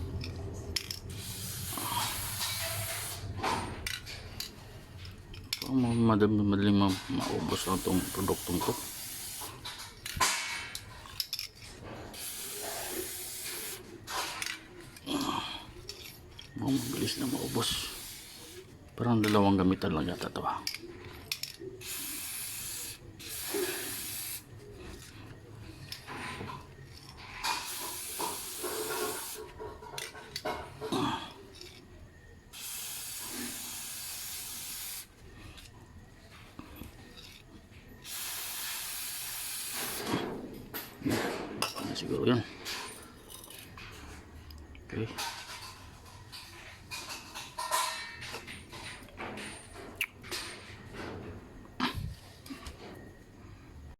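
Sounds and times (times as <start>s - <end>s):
aerosol can spraying: 1.1s - 3.4s, 7.5s - 9.7s, 12.1s - 13.9s, 16.7s - 18.7s, 21.8s - 24.5s, 27.5s - 29.4s, 32.6s - 35.1s, 38.0s - 40.1s.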